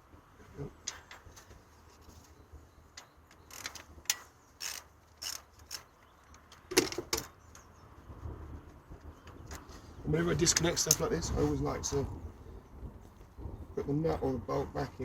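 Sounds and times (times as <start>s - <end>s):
ratchet spanner clicking: 3.0s - 6.6s.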